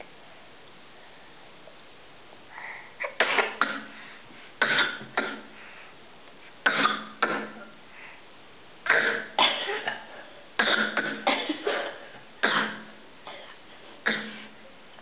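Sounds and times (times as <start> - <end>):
person fake coughing: 8.9 - 13.5.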